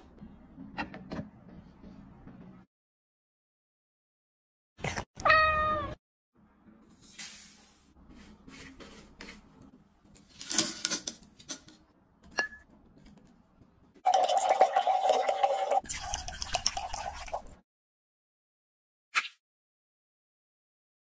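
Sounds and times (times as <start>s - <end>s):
cat meowing: 5.2s - 6.0s.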